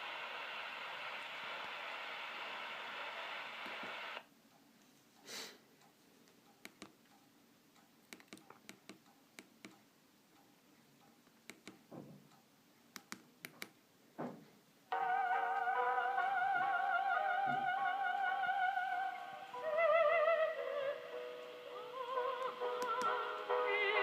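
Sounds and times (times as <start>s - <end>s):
steady hiss: 0.0s - 4.3s, 14.0s - 24.0s.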